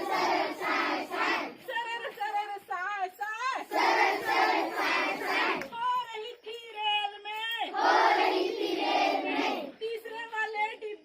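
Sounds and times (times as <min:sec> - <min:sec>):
children singing: 0:00.0 - 0:01.6, 0:03.7 - 0:05.7, 0:07.8 - 0:09.7.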